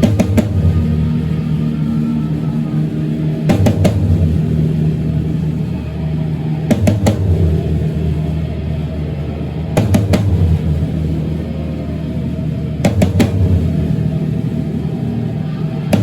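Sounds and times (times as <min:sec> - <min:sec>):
heavy drum hits: 0:00.0 - 0:01.9, 0:03.3 - 0:05.6, 0:06.6 - 0:08.4, 0:09.7 - 0:11.3, 0:12.8 - 0:15.0
low guitar drone: 0:00.0 - 0:16.0.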